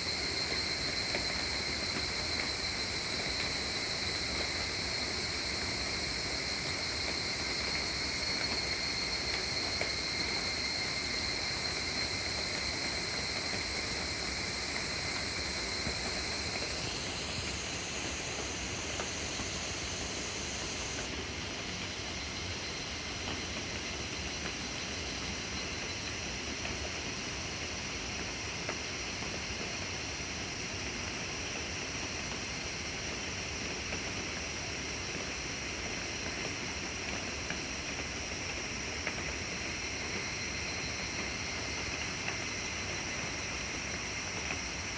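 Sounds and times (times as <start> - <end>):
steady rain hiss: 0.0 - 44.9
faint raindrop ticks: 35.9 - 44.7.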